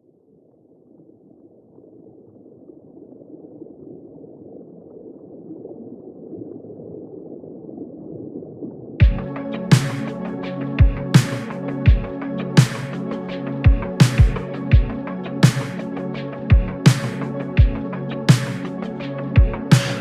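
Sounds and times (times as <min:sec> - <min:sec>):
electronic music with heavy drums: 0:09.0 - 0:20.0
muffled rushing noise: 0:11.0 - 0:20.0.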